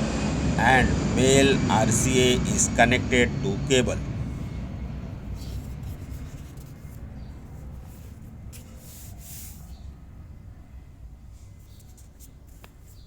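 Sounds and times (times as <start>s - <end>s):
low background rumble: 0.0s - 9.1s
faint scratchy rustles: 5.3s - 9.9s, 11.3s - 13.0s.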